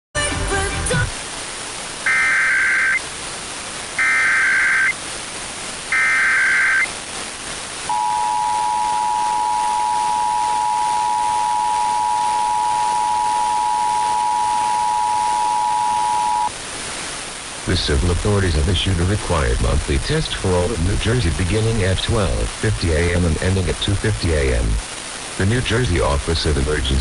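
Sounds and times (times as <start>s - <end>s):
faint radio hiss: 0.2s - 27.0s
two-tone attention signal: 2.1s - 3.0s, 4.0s - 5.0s, 5.9s - 6.9s, 7.9s - 16.5s
warbling data tones: 2.1s - 3.0s, 4.0s - 5.0s, 5.9s - 6.9s, 7.9s - 16.5s.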